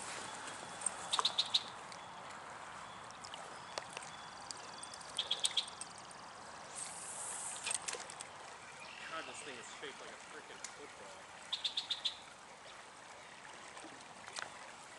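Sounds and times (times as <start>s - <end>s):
small bird chirping: 0.7s - 2.2s, 2.8s - 6.0s, 11.5s - 12.3s.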